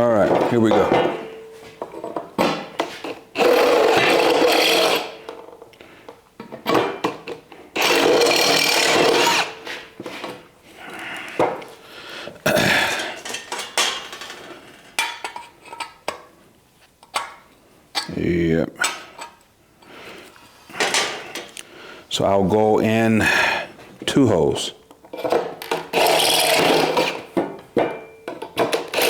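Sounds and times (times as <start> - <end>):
electric drill boring sheet metal: 3.4 - 5.2, 7.8 - 9.6, 25.9 - 27.2.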